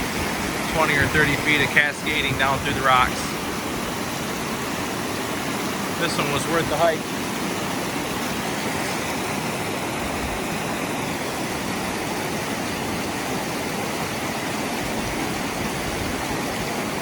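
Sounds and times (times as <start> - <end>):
waterfall rushing over rocks: 0.0 - 17.0.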